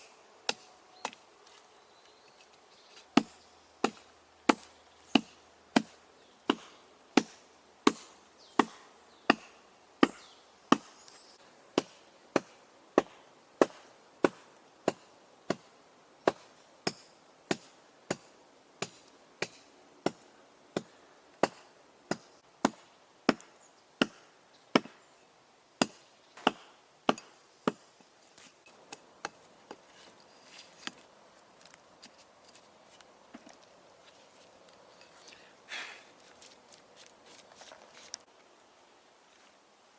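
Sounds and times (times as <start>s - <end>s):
axe chopping wood: 3.2s - 10.9s, 11.8s - 15.7s, 16.3s - 20.2s, 20.8s - 25.0s, 25.8s - 27.8s.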